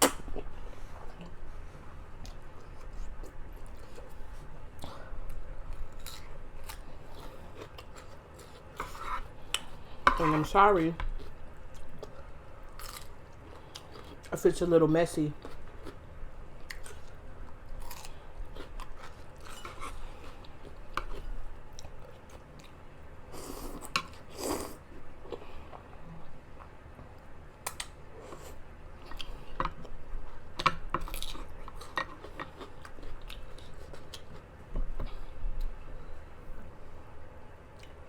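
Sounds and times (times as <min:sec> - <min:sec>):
person chewing crunchy food: 0:02.2 - 0:09.9, 0:11.2 - 0:14.3, 0:16.6 - 0:25.9, 0:27.6 - 0:34.5.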